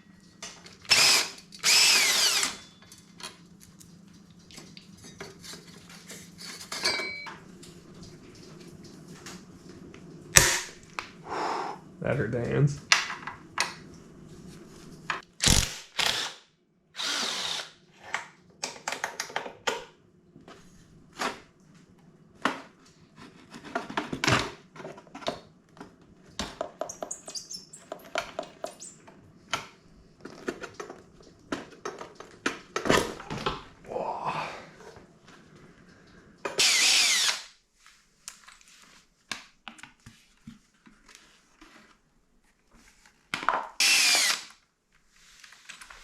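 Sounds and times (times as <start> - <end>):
handheld power tool running: 0.9 - 2.6, 15.4 - 16.4, 17.0 - 17.8, 36.6 - 37.5, 43.8 - 44.5.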